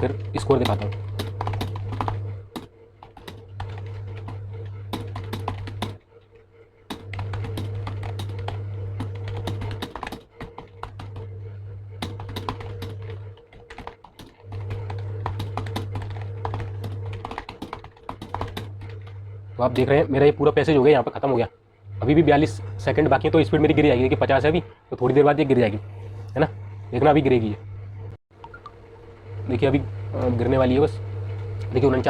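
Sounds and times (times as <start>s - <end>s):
fast keyboard typing: 0.0s - 6.0s, 6.9s - 11.4s, 12.0s - 19.2s
loud low hum: 18.5s - 32.0s.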